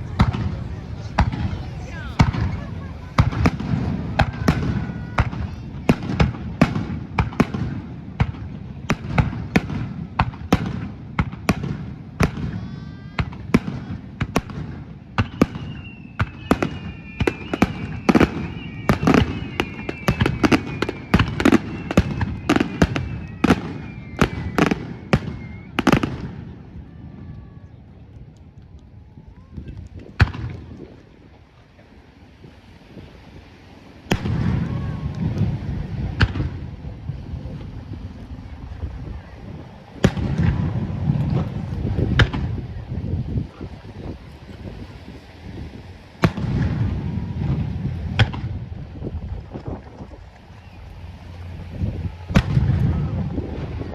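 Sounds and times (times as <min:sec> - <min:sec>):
fireworks bangs: 0:00.0 - 0:27.8, 0:29.4 - 0:31.9, 0:34.0 - 0:53.9
whistling firework shells: 0:00.1 - 0:27.8, 0:49.6 - 0:53.9.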